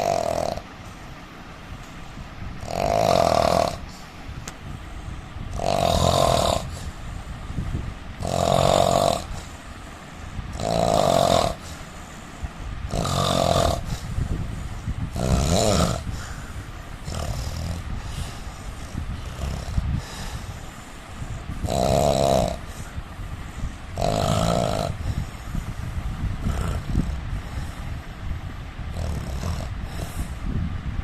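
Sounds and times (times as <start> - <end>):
man snoring: 0.0 - 0.7, 2.6 - 4.0, 5.5 - 7.1, 8.2 - 9.6, 10.5 - 12.0, 12.8 - 23.0, 23.6 - 27.9, 28.9 - 30.4.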